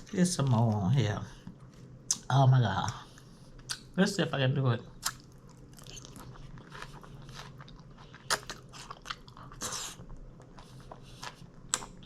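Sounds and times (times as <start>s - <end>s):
crunchy food chewing: 5.0s - 12.0s.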